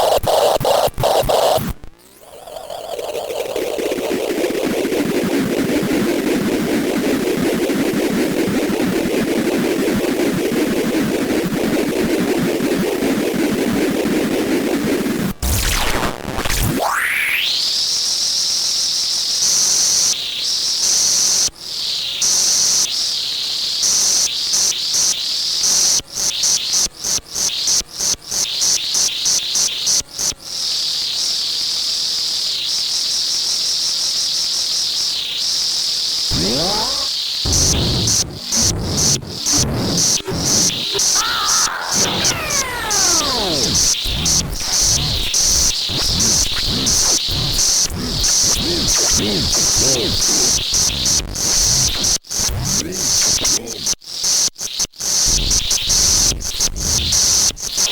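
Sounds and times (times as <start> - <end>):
buzzy low electronic drone: 36.3 - 41.2, 41.9 - 53.4
high shrill stuttering tone: 36.3 - 50.9.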